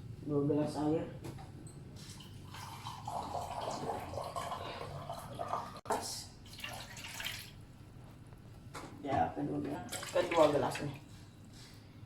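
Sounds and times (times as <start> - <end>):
water poured from a glass splashing: 2.0 - 5.8, 6.4 - 7.6.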